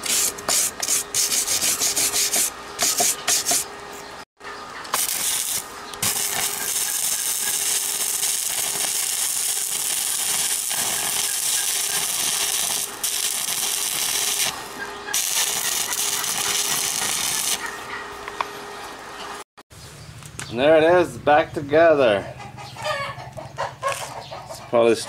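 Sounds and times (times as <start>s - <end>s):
welding arc crackling and sizzling: 0.0s - 3.6s, 4.9s - 17.7s.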